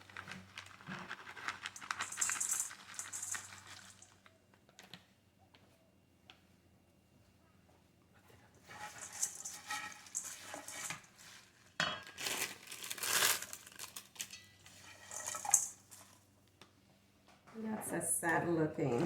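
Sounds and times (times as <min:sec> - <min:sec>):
salad rustling and crinkling: 0:00.0 - 0:04.3, 0:08.6 - 0:16.2
dishes and utensils clinking: 0:08.7 - 0:11.1, 0:11.8 - 0:12.2, 0:14.2 - 0:16.2.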